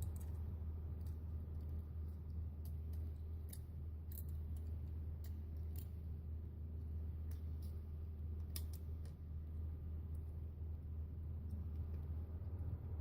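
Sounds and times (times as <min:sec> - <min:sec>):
low electrical hum: 0:00.0 - 0:13.0
small plastic and metal clicks: 0:01.0 - 0:06.0, 0:07.2 - 0:07.8, 0:08.4 - 0:09.2.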